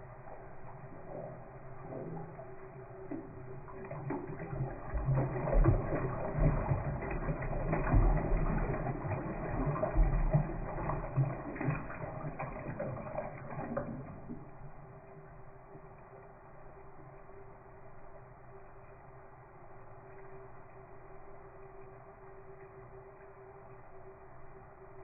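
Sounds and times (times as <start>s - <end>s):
toilet flushing: 0.5s - 15.4s.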